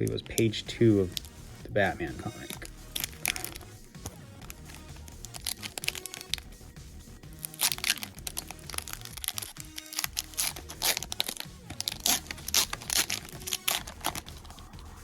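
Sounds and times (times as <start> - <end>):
cards rustling: 0.0 - 1.4, 2.1 - 6.6, 7.2 - 15.0
background music: 0.0 - 15.0
foil wrappers crinkling and tearing: 2.3 - 6.5, 7.3 - 14.8.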